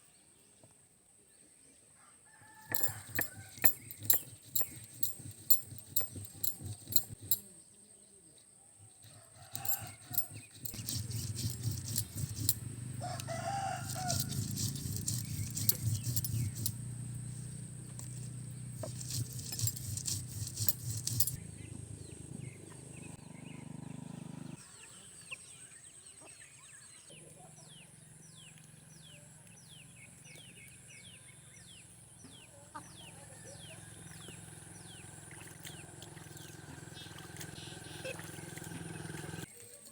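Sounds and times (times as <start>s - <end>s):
grinding stone rumble: 2.6s - 7.4s, 9.4s - 23.0s
stone knocking crushing spices: 2.6s - 7.4s, 9.6s - 13.0s, 13.8s - 17.0s, 18.8s - 21.4s.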